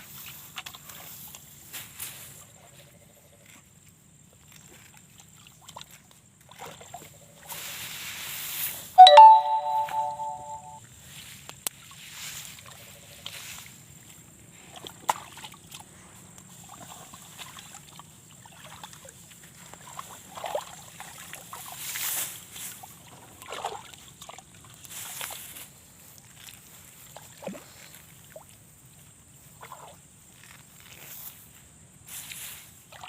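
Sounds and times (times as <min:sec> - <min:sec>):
water sloshing and splashing: 0:16.6 - 0:22.0, 0:23.4 - 0:25.4.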